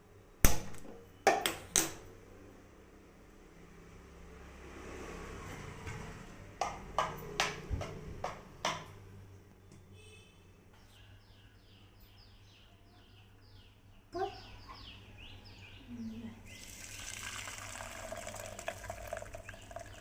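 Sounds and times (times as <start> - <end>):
bird chirping: 9.6 - 20.0.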